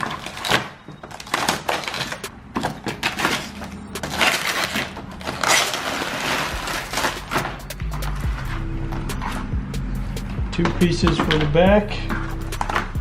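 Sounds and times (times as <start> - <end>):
packaging crackling and crinkling: 0.0 - 8.6.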